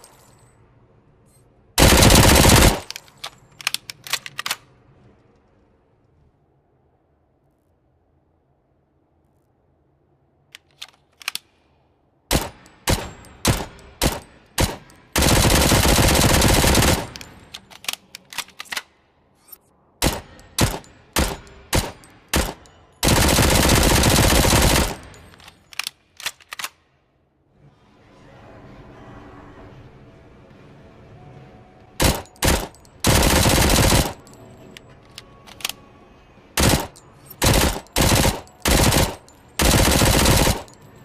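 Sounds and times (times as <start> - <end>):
submachine gun firing: 1.8 - 3.0, 12.3 - 17.5, 20.0 - 25.3, 32.0 - 34.3, 36.6 - 40.8.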